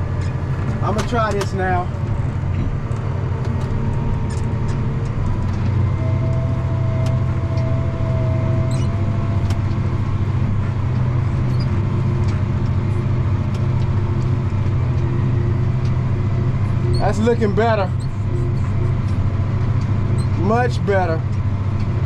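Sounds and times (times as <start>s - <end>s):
tractor engine under load: 0.0s - 22.0s
sharp clicks and rattles: 0.2s - 5.9s.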